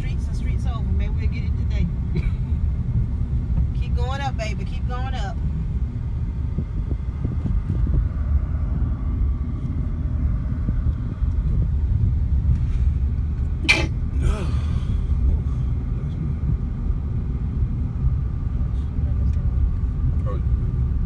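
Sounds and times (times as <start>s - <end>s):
car road and wind noise: 0.0s - 21.0s
person coughing: 13.7s - 14.7s
person murmuring: 14.2s - 14.6s.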